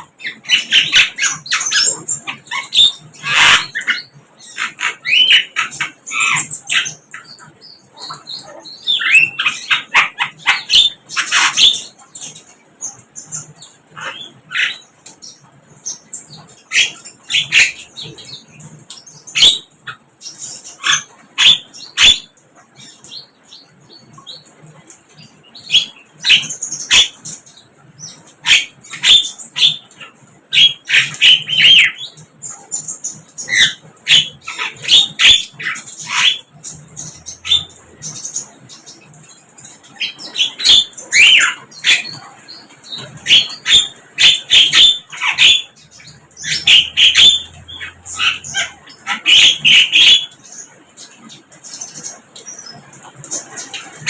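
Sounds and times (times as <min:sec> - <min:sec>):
flycatcher chirping: 0:44.7 - 0:49.1.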